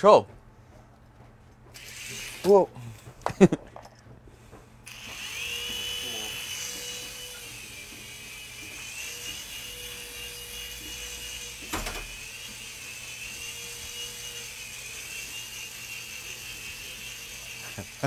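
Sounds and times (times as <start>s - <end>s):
toy helicopter motor whining: 1.7s - 2.7s, 4.8s - 18.0s.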